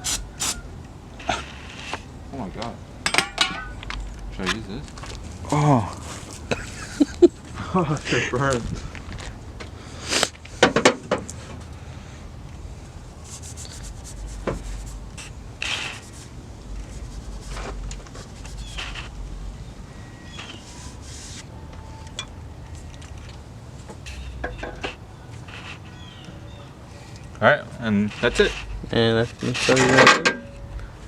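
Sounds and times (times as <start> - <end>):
scraping and rubbing: 0.0 - 0.6, 1.2 - 2.1, 13.1 - 19.4, 20.3 - 21.5, 24.0 - 26.2, 27.6 - 30.6.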